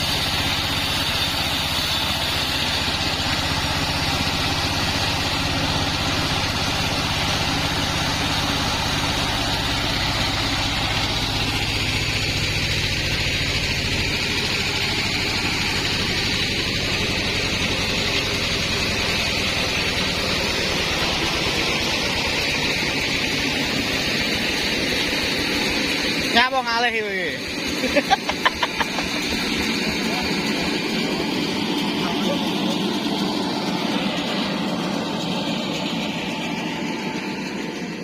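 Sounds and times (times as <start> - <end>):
hissing whir: 0.0 - 26.4
sawmill engine running: 0.0 - 38.0.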